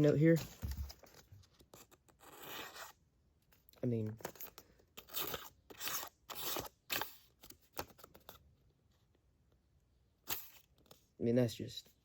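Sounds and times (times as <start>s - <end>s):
knife blade tearing paper: 5.0s - 7.2s.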